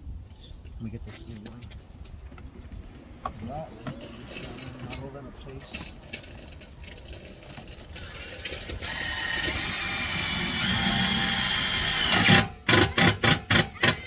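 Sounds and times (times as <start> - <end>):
power drill driving screw: 8.6 - 14.0.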